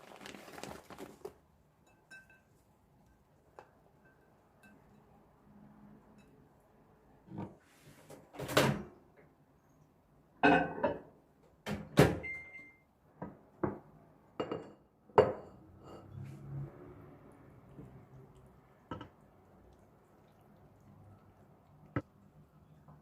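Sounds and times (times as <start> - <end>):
cookware clattering: 10.4 - 11.1.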